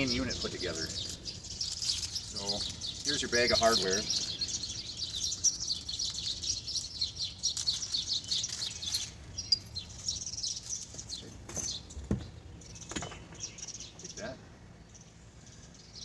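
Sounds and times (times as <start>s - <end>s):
small birds chirping: 0.0s - 16.0s
soft knocks: 11.3s - 13.5s.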